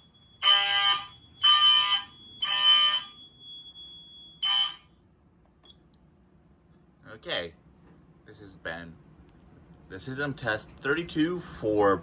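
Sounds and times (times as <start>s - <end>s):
fire alarm horn blasts: 0.0s - 5.0s.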